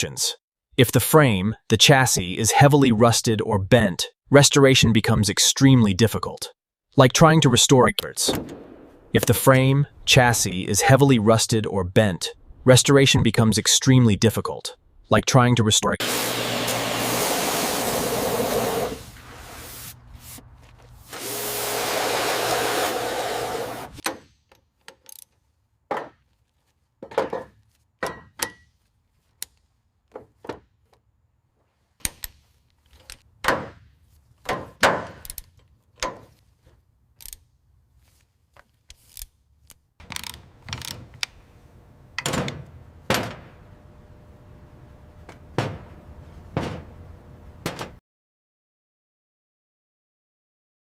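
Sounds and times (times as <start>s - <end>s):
loud spraying hiss: 16.0s - 19.9s, 21.1s - 23.9s
tool knocks and clanks: 24.0s - 25.1s, 25.9s - 26.4s, 27.0s - 28.8s, 30.1s - 31.0s, 32.0s - 36.4s, 42.2s - 43.7s, 45.2s - 48.0s.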